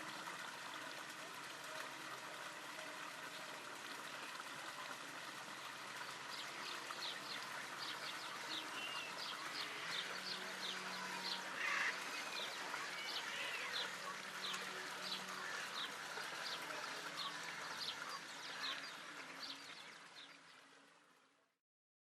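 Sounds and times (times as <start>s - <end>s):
birds chattering: 6.3s - 19.8s.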